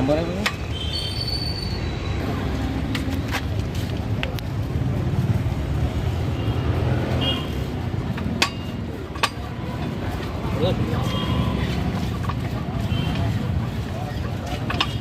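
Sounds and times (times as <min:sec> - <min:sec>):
road traffic rumble: 0:00.0 - 0:15.0
sharp clicks and knocks: 0:08.0 - 0:09.6, 0:14.2 - 0:15.0.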